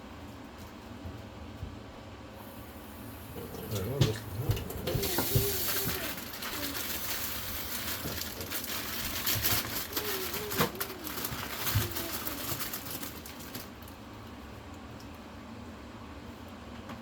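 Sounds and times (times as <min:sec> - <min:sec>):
water running from tap: 0:02.7 - 0:08.5.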